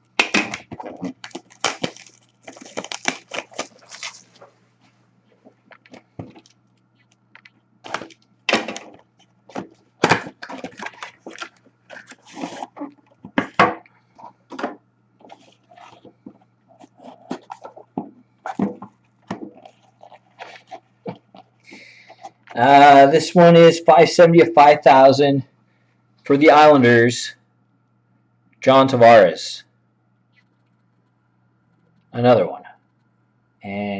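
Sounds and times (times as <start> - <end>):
packaging crinkling: 0.2 - 4.6, 5.2 - 13.6, 15.2 - 22.6
box scraping: 9.6 - 12.9.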